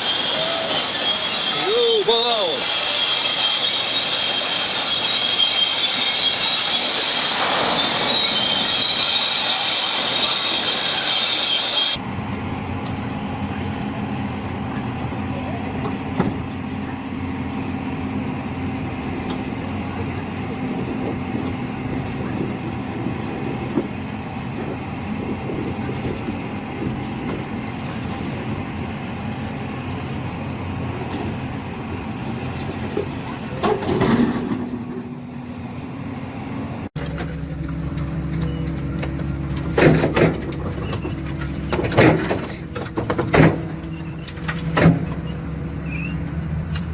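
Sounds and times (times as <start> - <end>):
heavy diesel engine under load: 0.0 - 46.9
metal knocks and clanks: 37.0 - 45.4.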